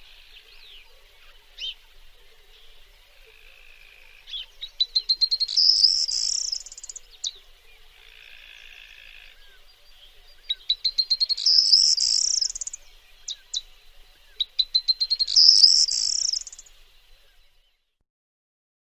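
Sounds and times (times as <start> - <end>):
bird singing rattling trill: 4.2 - 7.5, 10.4 - 13.8, 14.4 - 16.8.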